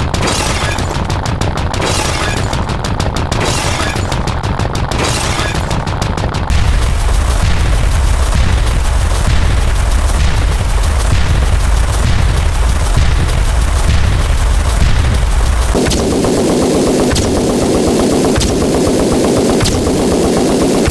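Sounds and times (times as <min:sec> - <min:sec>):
rapid bassy sound effects barrage: 0:06.5 - 0:20.9.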